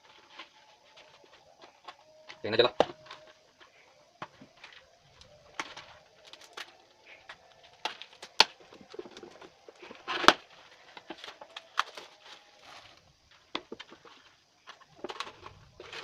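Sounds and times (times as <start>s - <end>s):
packaging crinkling and tearing: 4.8s - 13.0s.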